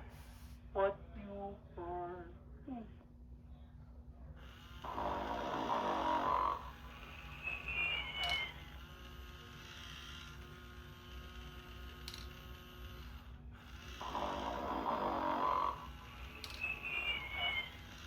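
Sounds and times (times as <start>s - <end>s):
steady electronic hum: 4.2s - 18.0s
toy snoring: 4.4s - 18.0s.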